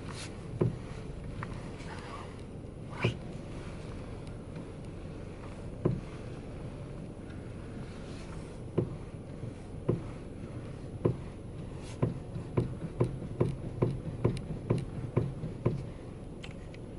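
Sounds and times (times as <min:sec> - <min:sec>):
steady low hum: 0:00.0 - 0:16.9
dull knocking from steering: 0:00.4 - 0:01.7, 0:05.7 - 0:07.2, 0:08.6 - 0:16.0.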